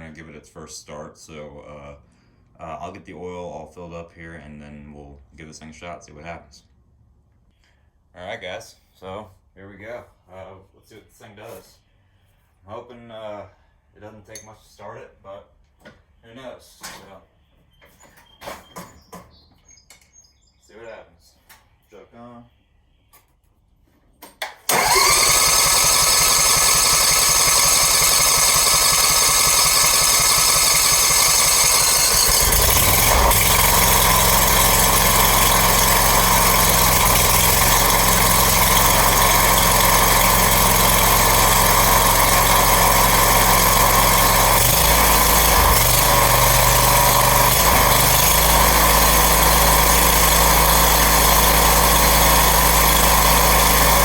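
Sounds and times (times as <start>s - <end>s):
mower engine starting and running: 24.6s - 54.0s.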